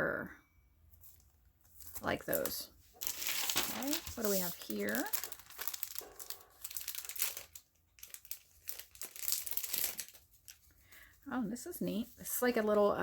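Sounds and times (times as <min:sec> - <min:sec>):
packaging crinkling: 0:01.7 - 0:11.1.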